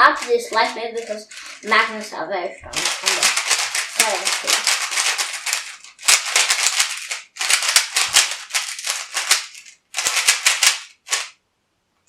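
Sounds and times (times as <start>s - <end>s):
speed cube clicking: 2.8s - 11.4s.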